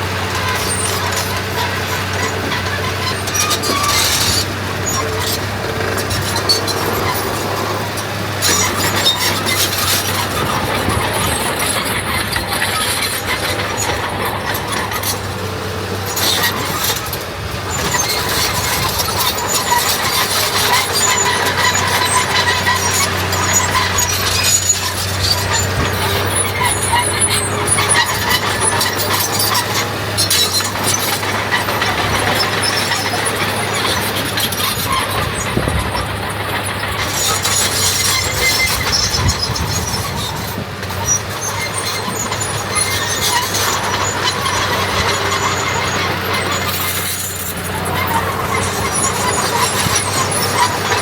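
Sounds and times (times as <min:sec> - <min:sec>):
diesel engine running: 0:00.0 - 0:51.0
metal squealing: 0:00.0 - 0:51.0.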